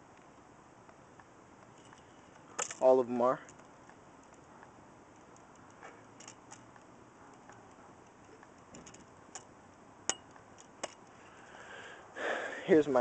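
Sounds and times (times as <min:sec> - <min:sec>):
background hiss: 0:00.0 - 0:13.0.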